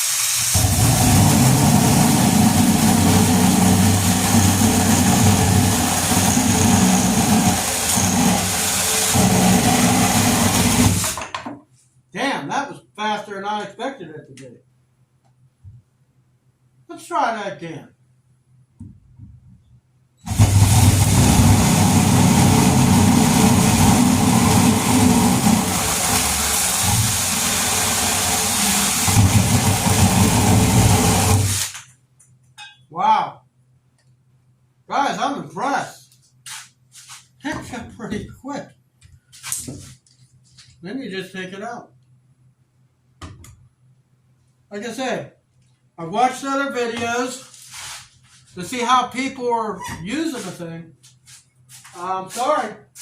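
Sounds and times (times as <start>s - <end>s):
chainsaw cutting wood: 0.6s - 11.2s, 20.3s - 31.8s.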